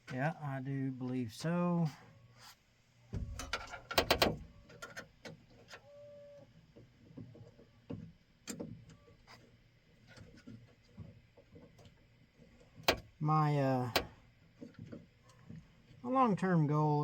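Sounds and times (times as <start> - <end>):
light clicks and knocks: 3.1 - 5.8, 6.7 - 13.2.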